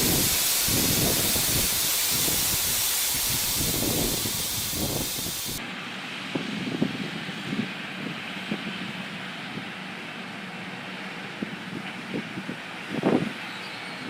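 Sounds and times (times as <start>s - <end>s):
loud steady hiss: 0.0s - 5.9s.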